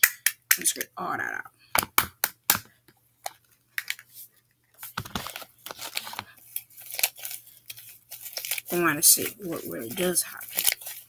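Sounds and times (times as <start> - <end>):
slime crackling and squelching: 5.2 - 11.0.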